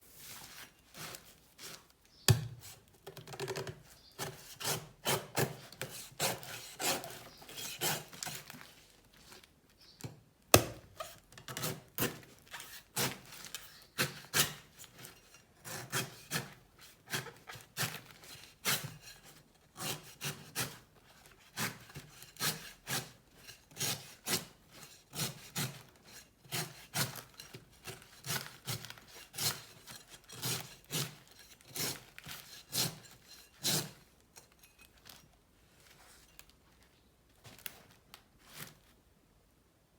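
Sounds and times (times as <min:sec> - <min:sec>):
knife scraping coconut husk: 0:00.2 - 0:02.8, 0:04.1 - 0:08.8, 0:10.6 - 0:35.2
knife chopping coconut: 0:04.2 - 0:07.2, 0:10.6 - 0:10.9.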